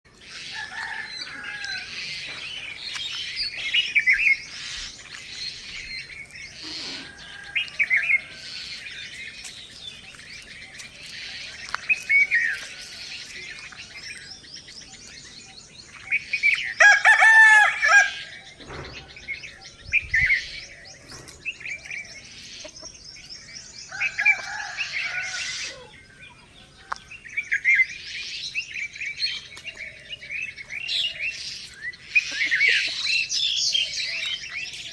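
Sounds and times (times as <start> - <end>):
small birds chirping: 0.1 - 34.9
rooster crowing: 0.4 - 2.2, 6.6 - 8.8, 16.8 - 18.3, 23.9 - 26.0.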